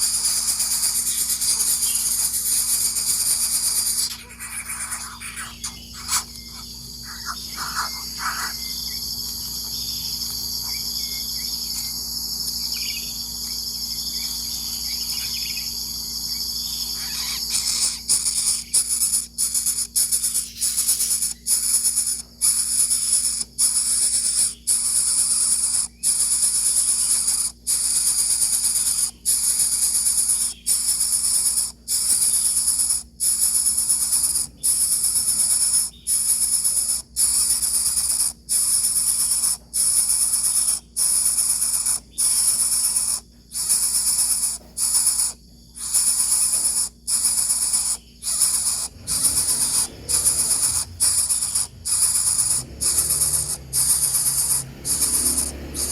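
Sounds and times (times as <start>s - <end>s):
bird chicks hissing: 0.0s - 9.0s, 16.9s - 55.9s.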